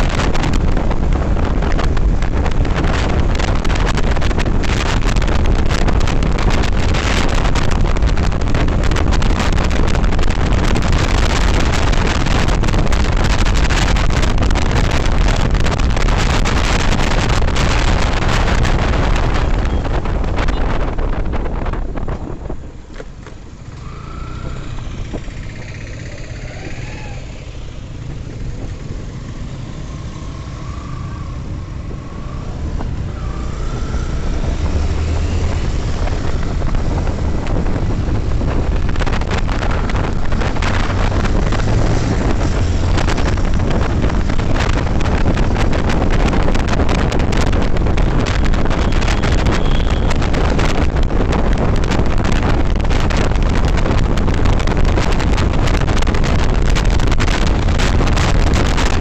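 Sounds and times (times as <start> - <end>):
road noise: 0.0 - 59.0
traffic: 0.0 - 59.0
wind buffeting on microphone: 0.0 - 59.0
motorcycle engine: 22.8 - 59.0.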